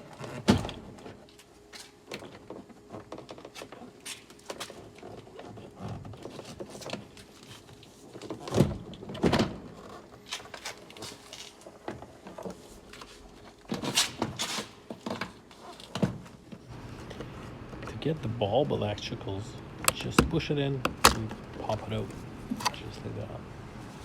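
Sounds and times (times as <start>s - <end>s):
loud thunks: 19.8s - 21.6s
plastic trim panel clicks: 19.8s - 21.8s.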